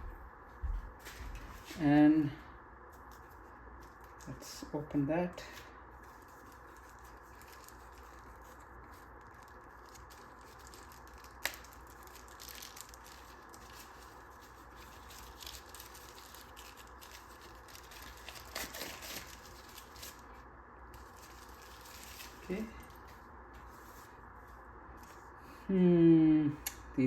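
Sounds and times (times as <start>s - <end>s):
packaging crinkling and rustling: 2.9s - 4.4s, 5.5s - 25.3s.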